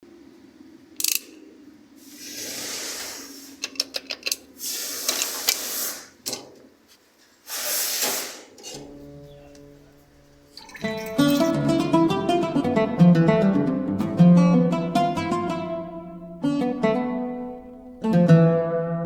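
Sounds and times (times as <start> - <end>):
noisy mechanical bursts: 4.6 - 6.2.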